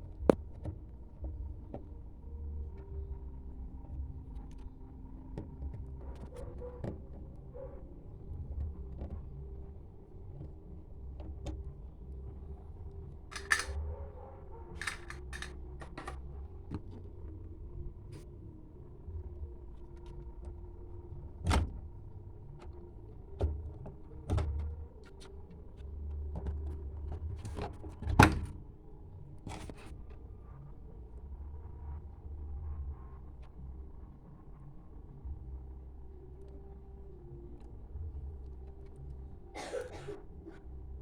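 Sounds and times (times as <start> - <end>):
low steady hum: 0.0 - 41.0
clicks and knocks of parts: 13.3 - 13.9, 14.7 - 17.0.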